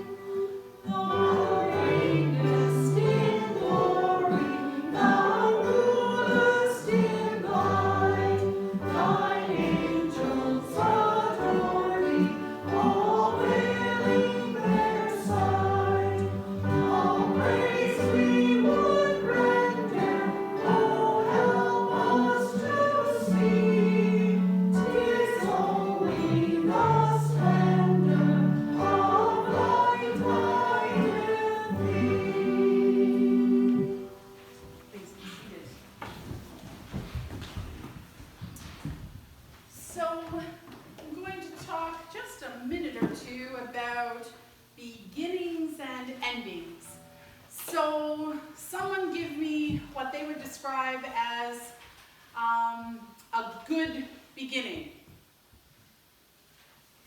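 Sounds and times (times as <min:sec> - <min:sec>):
congregation singing a hymn: 0:00.0 - 0:36.3
instrumental accompaniment bass notes: 0:01.3 - 0:34.0.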